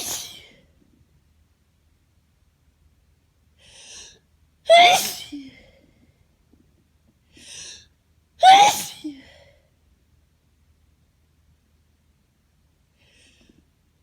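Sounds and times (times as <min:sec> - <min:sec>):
person sneezing loudly: 0:00.0 - 0:00.5, 0:04.7 - 0:05.4, 0:08.4 - 0:09.1.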